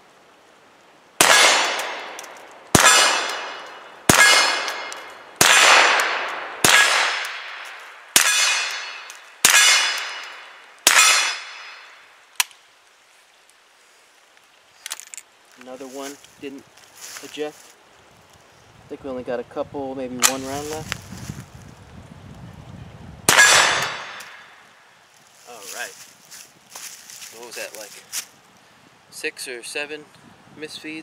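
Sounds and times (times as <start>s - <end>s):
rifle shots: 1.2s - 11.9s, 23.3s - 24.5s
steel target ringing: 8.2s - 12.0s.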